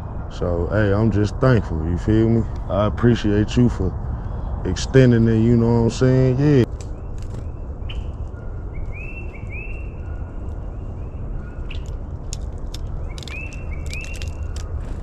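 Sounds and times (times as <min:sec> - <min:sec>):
low outdoor rumble: 0:00.0 - 0:15.0
songbird whistling: 0:06.9 - 0:10.2, 0:13.0 - 0:14.6.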